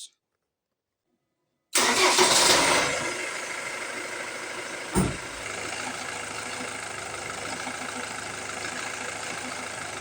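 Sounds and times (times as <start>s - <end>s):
diesel engine idling roughly: 1.8s - 10.0s
low thump: 5.0s - 5.4s.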